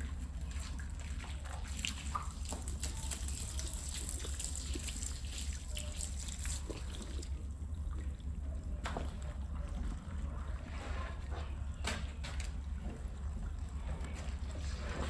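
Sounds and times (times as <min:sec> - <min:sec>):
water splashing on a rug: 0:00.0 - 0:08.1
steady low hum: 0:00.0 - 0:15.0.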